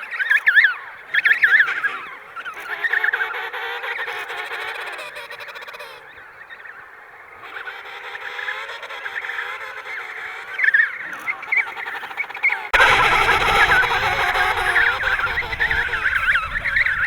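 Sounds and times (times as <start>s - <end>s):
penguins warbling calls: 7.8s - 17.0s.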